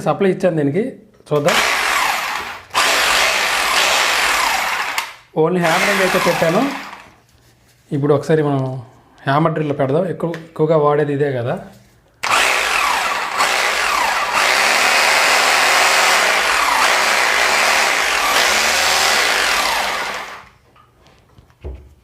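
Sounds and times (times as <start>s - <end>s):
hammer drill running: 1.5s - 7.2s, 12.2s - 20.5s.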